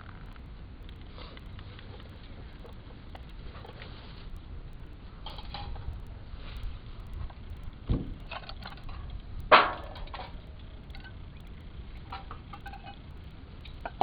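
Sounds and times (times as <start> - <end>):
faint small clicks: 0.0 - 7.7
sharp clatter: 7.2 - 14.0.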